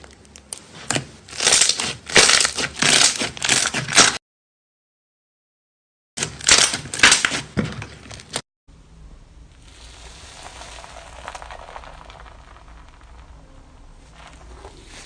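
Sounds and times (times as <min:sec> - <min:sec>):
slime crackling when squeezed: 0:01.3 - 0:04.2, 0:09.6 - 0:15.0
steady hiss: 0:09.4 - 0:12.0.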